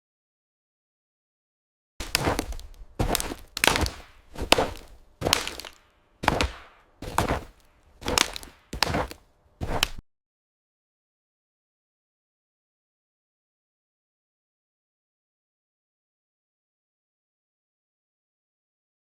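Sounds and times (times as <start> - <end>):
heavy running footsteps: 2.0 - 10.0.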